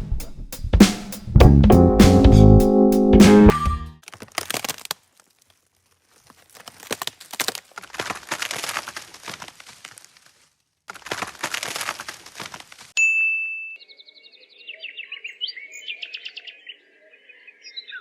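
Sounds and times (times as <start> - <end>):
craft materials crinkling by hand: 4.0 - 13.0.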